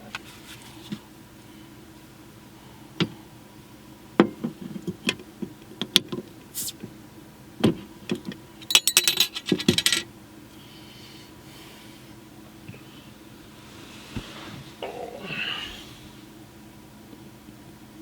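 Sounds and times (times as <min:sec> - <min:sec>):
metallic jingling rattle: 0:08.7 - 0:10.0.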